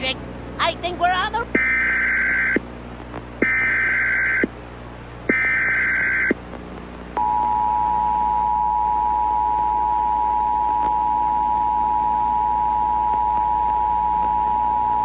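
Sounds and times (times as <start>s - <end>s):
warbling digital data bursts: 0.6s - 2.6s, 3.4s - 4.5s, 5.3s - 6.4s.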